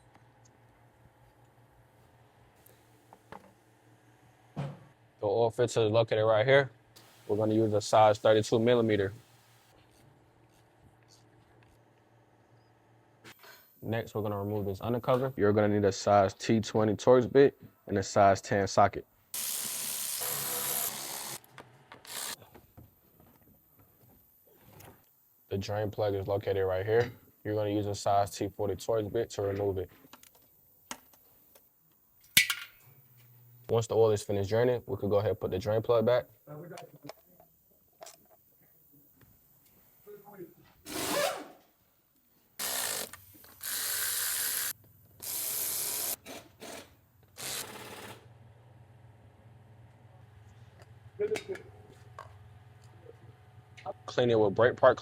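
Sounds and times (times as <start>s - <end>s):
ratchet wrench clicking: 42.6s - 46.2s.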